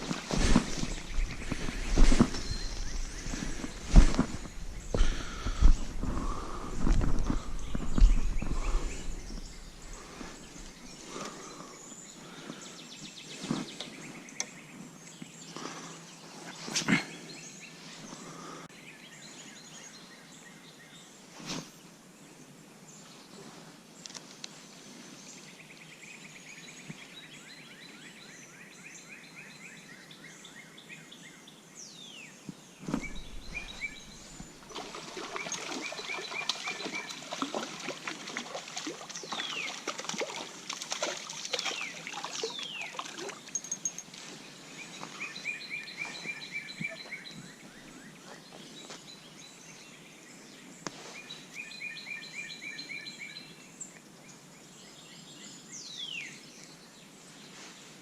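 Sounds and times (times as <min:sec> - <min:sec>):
songbirds singing trills: 0:00.0 - 0:21.2, 0:21.8 - 0:58.0
noise full of small clicks: 0:24.0 - 0:24.6.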